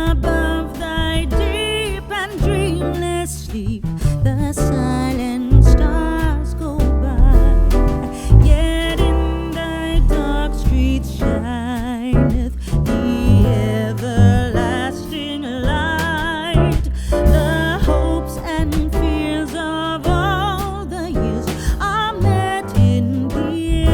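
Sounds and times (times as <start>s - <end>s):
upbeat song with vocals: 0.0s - 23.9s.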